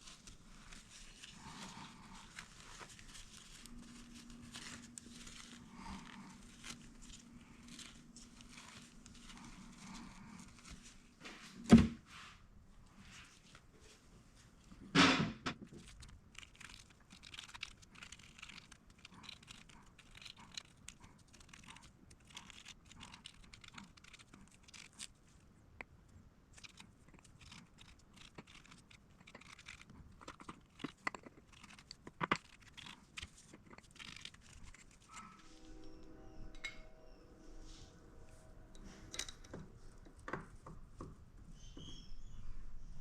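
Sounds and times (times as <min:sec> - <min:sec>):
objects rustling and scraping: 0:00.0 - 0:14.9, 0:26.6 - 0:43.0.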